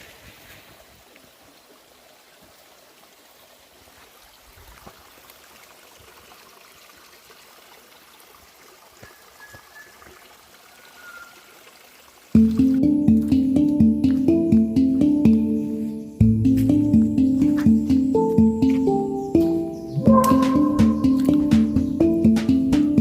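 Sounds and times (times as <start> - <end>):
small stream flowing: 0.0 - 23.0.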